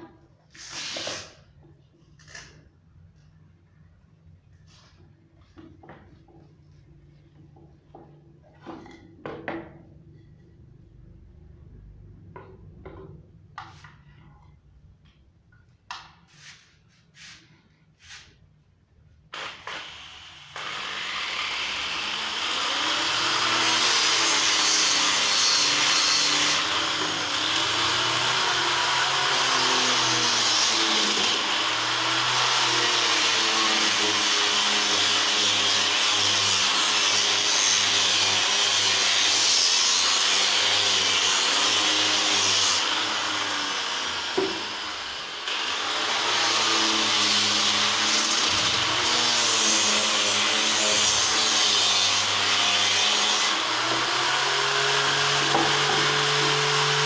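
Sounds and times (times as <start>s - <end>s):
power tool cutting wood: 19.4s - 57.0s.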